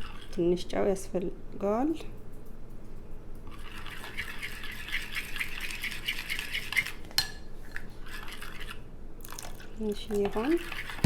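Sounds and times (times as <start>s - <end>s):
batter stirred in a bowl: 0.0s - 0.6s, 3.5s - 11.0s.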